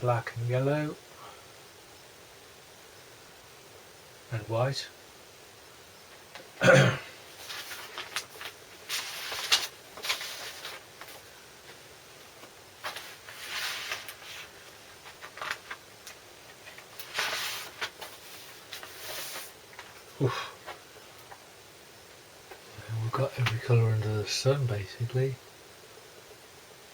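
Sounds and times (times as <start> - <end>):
record sleeves rustling and sliding: 7.3 - 20.1.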